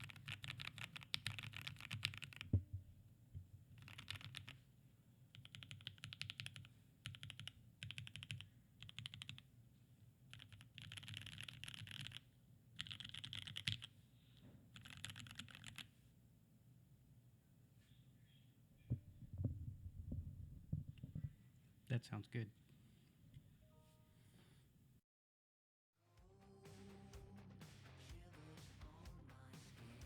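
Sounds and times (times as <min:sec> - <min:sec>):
mechanical keyboard typing: 0:00.0 - 0:02.6, 0:03.7 - 0:04.6, 0:05.3 - 0:09.5, 0:10.3 - 0:12.2, 0:12.8 - 0:13.9, 0:14.7 - 0:15.9.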